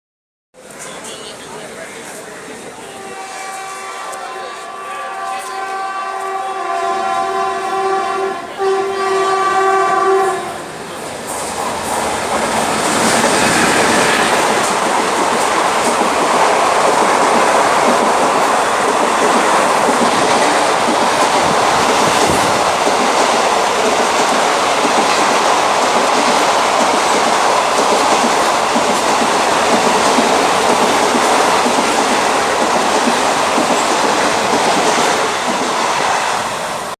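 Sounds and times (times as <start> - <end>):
train rushing past: 0.6 - 36.9
wheels clacking over rail joints: 11.2 - 36.2.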